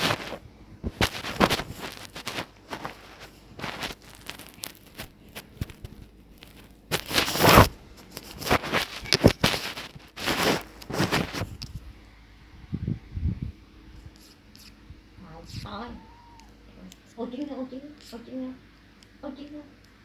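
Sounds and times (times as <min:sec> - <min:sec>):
cats scuffling: 0:00.0 - 0:12.0
cats hissing: 0:06.9 - 0:11.4, 0:15.5 - 0:17.2.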